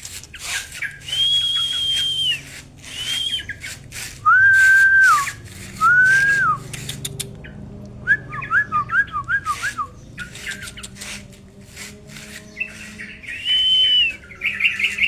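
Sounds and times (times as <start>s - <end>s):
bird singing whistled notes: 0.7s - 6.9s, 8.0s - 11.0s, 12.4s - 15.0s
sharp clicks: 6.1s - 8.0s.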